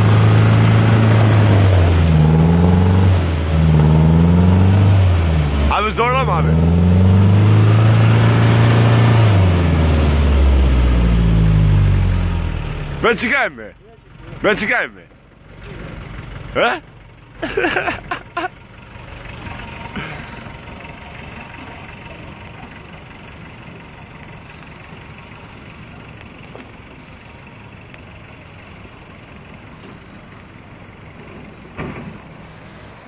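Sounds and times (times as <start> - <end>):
engine droning: 0.0 - 33.0
voices: 5.6 - 6.7, 12.9 - 18.5, 19.2 - 28.1.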